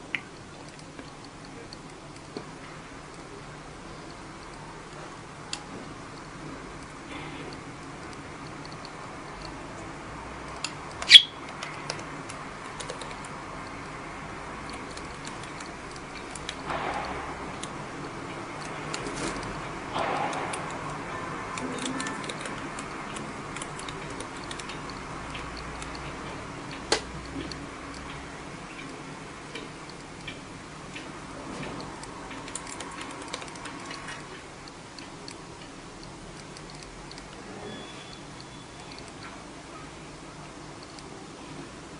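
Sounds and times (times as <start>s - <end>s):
bird beak clicking: 10.5s - 14.0s
budgerigar chirp: 11.1s - 11.4s.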